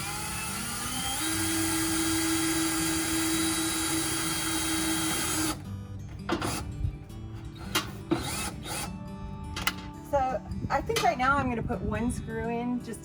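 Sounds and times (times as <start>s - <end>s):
electric drill boring: 0.0s - 5.6s, 7.7s - 8.9s.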